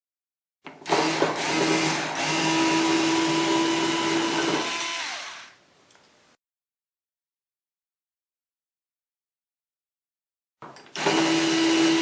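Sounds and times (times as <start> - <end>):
power drill spinning: 0.8 - 5.6, 10.9 - 12.0.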